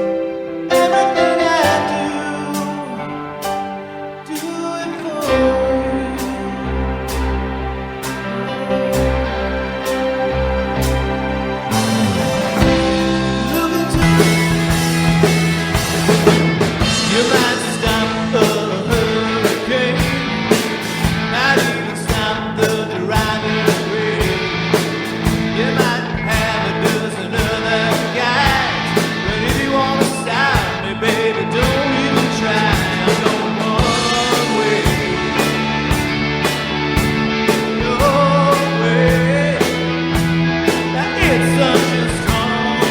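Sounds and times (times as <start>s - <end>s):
rock band playing live: 0.0s - 42.9s
steady drum beat: 11.7s - 42.9s.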